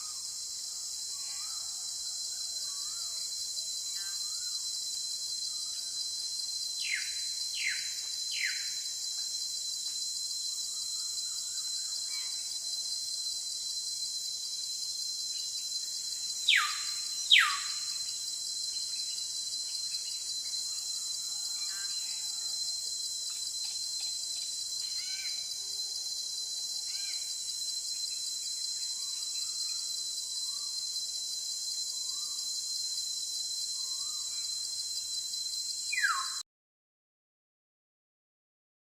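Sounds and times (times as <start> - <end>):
insect chorus: 0.0 - 36.4
bird calls: 16.5 - 17.7.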